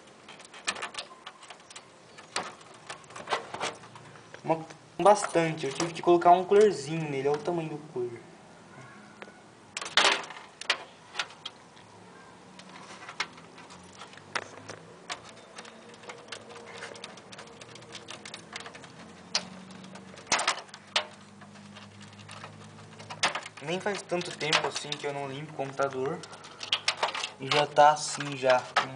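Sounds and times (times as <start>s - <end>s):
louder clatters: 0.0s - 4.2s, 9.7s - 11.6s, 12.6s - 28.9s
hands clicking on computer parts: 0.0s - 4.4s, 12.5s - 28.9s.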